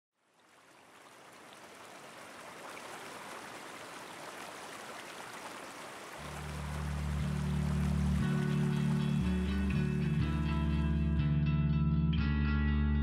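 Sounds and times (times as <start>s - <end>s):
flowing water: 0.1s - 10.5s
deep bass music: 6.5s - 13.0s.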